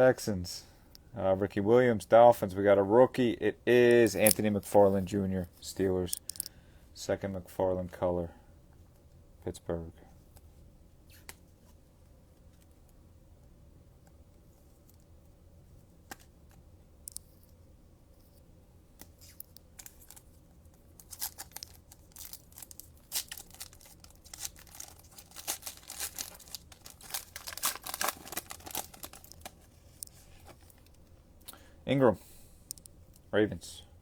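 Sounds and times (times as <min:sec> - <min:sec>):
faint clicks and rustles: 0:16.1 - 0:31.5
foil wrapper tearing and crinkling: 0:21.0 - 0:30.9.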